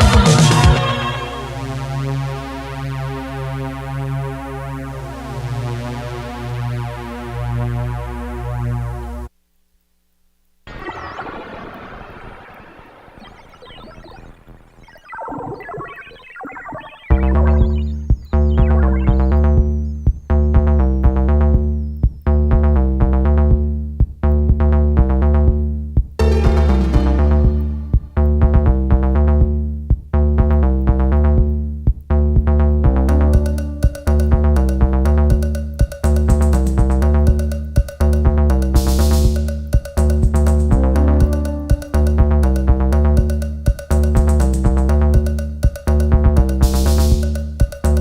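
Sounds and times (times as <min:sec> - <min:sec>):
pulsing synthesizer keyboard line: 0:00.0 - 0:02.9, 0:10.7 - 0:21.3, 0:26.2 - 0:28.9, 0:32.9 - 0:35.6, 0:40.7 - 0:43.0
electronic music: 0:00.0 - 0:09.2, 0:10.7 - 0:21.8, 0:26.2 - 0:29.6, 0:32.8 - 0:48.0
steady bass drone: 0:17.1 - 0:39.4.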